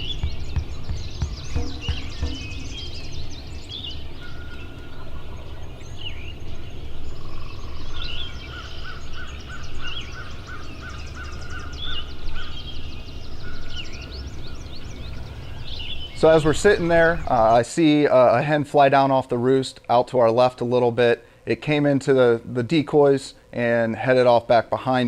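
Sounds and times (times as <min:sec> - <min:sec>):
wild turkey calling: 0:00.0 - 0:17.6
songbirds chirping and trilling: 0:00.0 - 0:25.0.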